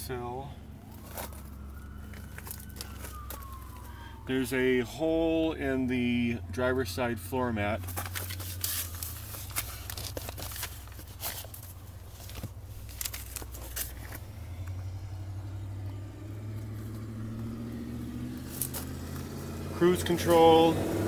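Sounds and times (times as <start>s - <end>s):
car engine idling: 0.0s - 21.0s.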